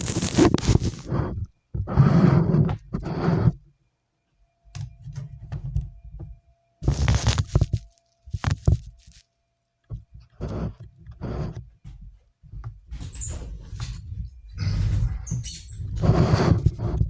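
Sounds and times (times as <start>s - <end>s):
handling rumbling and rustling: 0.0s - 1.9s, 5.4s - 9.2s.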